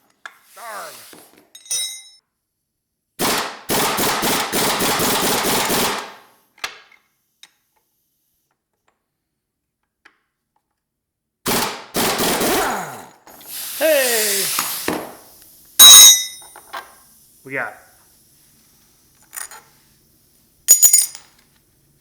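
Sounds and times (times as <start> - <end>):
light metallic clink: 1.6 - 2.2, 15.8 - 16.7, 20.7 - 21.4
impact wrench hammering: 15.8 - 16.5.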